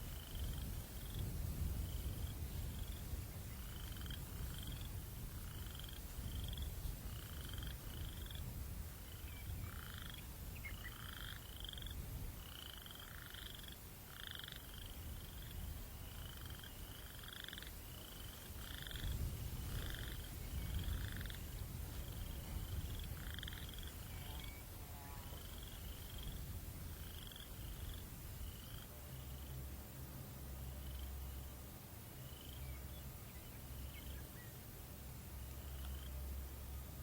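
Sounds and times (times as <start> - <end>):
low rumble of wind: 0.0 - 37.0.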